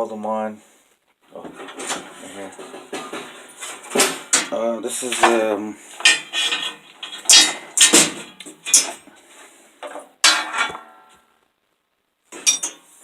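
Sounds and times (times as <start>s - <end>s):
metal tools clinking: 6.0s - 9.0s, 12.4s - 12.9s.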